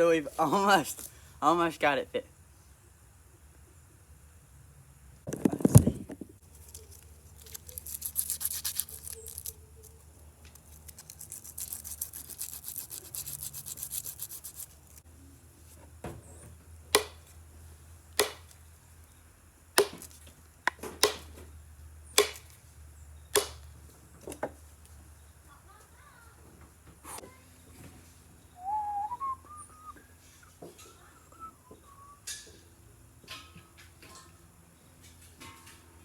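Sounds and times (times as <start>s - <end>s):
rasp scraping wood: 10.9s - 15.0s
sharp knocks of hatchet head: 17.0s - 17.2s, 18.2s - 18.5s, 19.8s - 20.1s, 20.7s - 21.3s, 22.2s - 22.5s, 23.3s - 23.6s.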